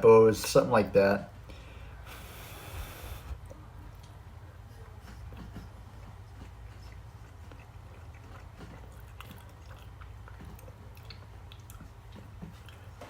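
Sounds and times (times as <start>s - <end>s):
low steady hum: 0.0s - 13.0s
person chewing: 5.3s - 13.0s
wet mouth clicks: 6.9s - 13.0s.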